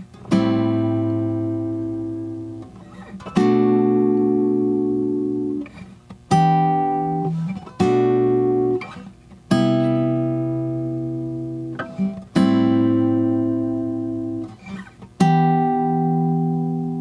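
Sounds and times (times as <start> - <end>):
guitar chords ringing out: 0.0 - 17.0.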